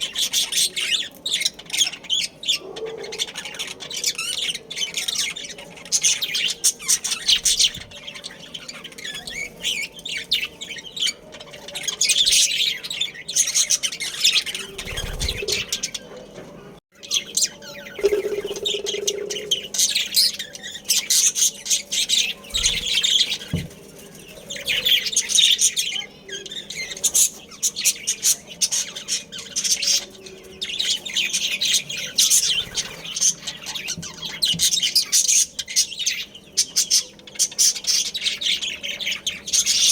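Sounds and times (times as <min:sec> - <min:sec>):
budgerigars chirping: 0:00.0 - 0:16.2.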